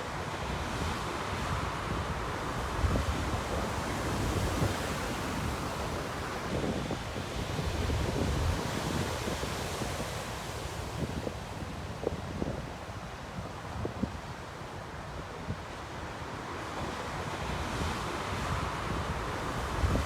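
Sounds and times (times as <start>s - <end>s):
sea surf washing onto beach: 0.0s - 12.3s, 15.6s - 20.0s
wind buffeting microphone: 1.5s - 12.8s.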